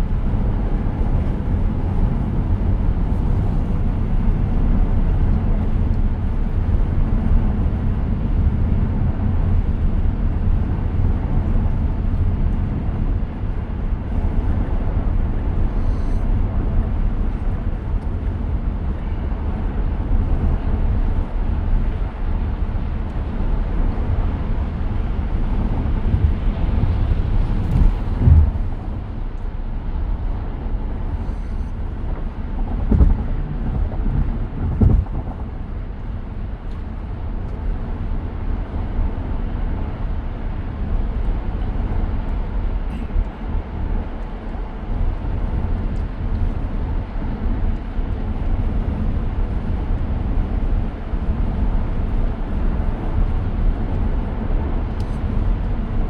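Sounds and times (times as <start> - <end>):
road and tyre rumble in car: 0.0 - 56.0
low thumps: 27.5 - 29.0.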